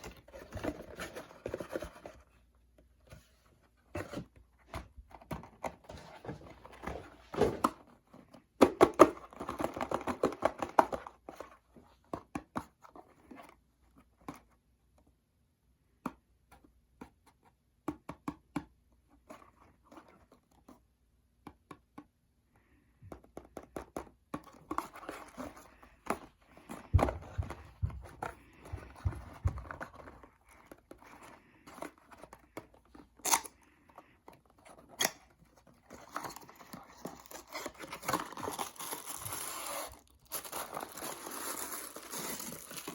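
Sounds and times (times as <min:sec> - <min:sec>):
plastic packaging tearing and crinkling: 0:37.0 - 0:42.9.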